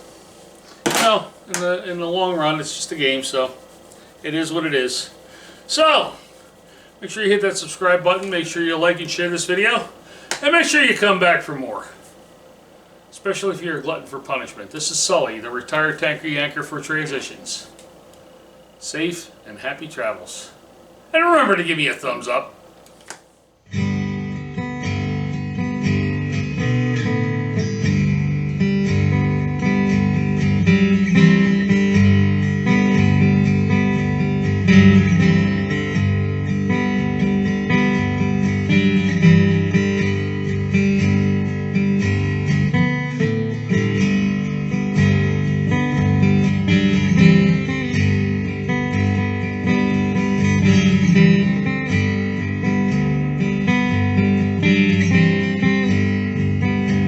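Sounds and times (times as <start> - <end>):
acoustic guitar music: 23.6 - 57.0.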